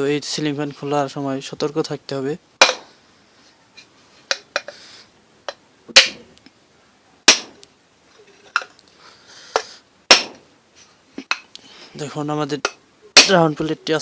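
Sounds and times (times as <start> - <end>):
hammer striking metal: 6.0 - 6.2, 7.3 - 7.6, 10.1 - 10.4.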